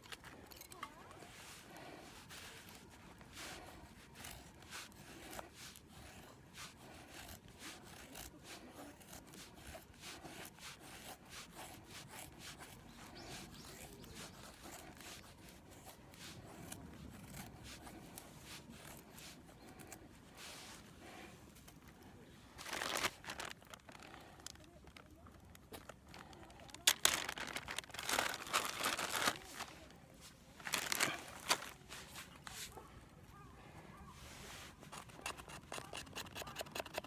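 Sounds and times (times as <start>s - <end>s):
blade scraping wood: 0.0s - 22.0s, 34.4s - 37.0s.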